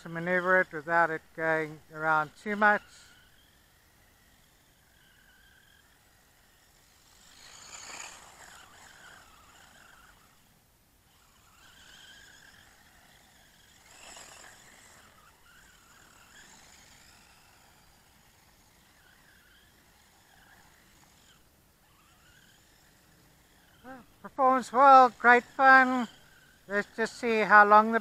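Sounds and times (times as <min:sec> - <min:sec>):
electric motor whining: 0:00.0 - 0:28.0.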